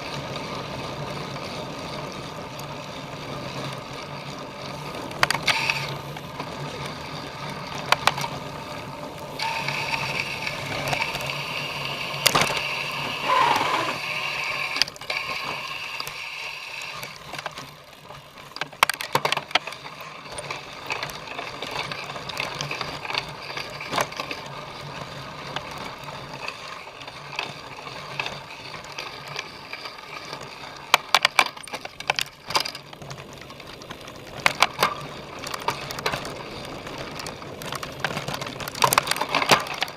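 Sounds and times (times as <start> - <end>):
bike rattling and clattering: 0.0 - 39.9
high steady whine: 4.5 - 17.8.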